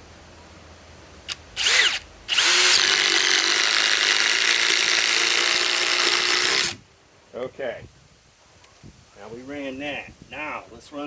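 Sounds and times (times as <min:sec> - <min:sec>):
impact driver hammering screw: 0:01.6 - 0:06.8.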